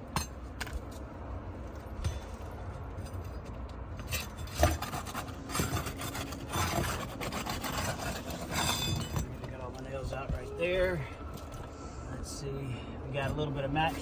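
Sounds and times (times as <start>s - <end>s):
shingle scraping and crackling: 1.8s - 11.9s.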